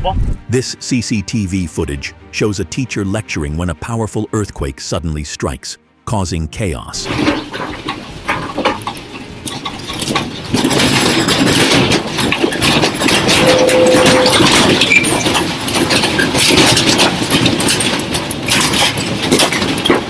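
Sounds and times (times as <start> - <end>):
earthquake rumble: 0.0 - 0.5
objects rattling and clattering: 7.0 - 20.0.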